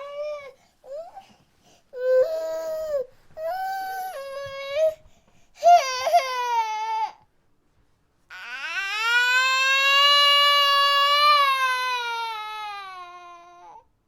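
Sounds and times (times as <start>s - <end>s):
infant crying: 5.6s - 7.2s, 8.3s - 13.8s.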